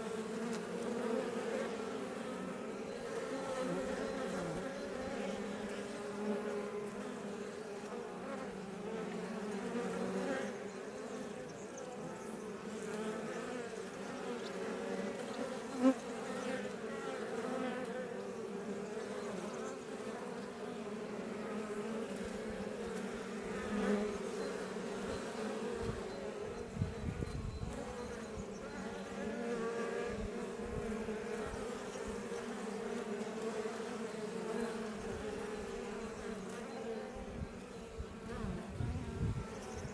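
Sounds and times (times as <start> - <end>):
bees buzzing in a swarm: 0.0 - 39.9.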